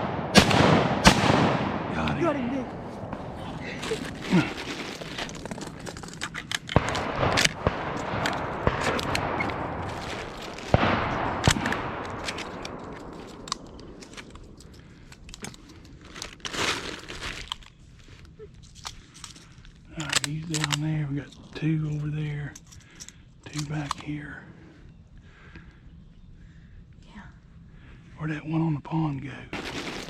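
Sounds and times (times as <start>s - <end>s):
rustling noise: 2.2s - 19.8s, 29.6s - 30.0s
sharp cracks and knocks: 3.8s - 17.7s.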